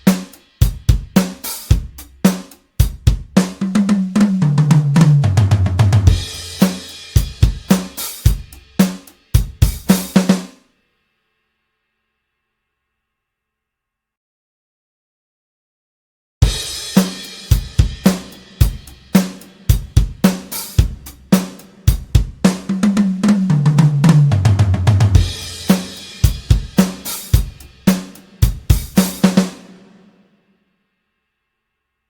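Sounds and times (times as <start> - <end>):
drum kit playing a groove: 0.0 - 10.6, 16.4 - 30.2.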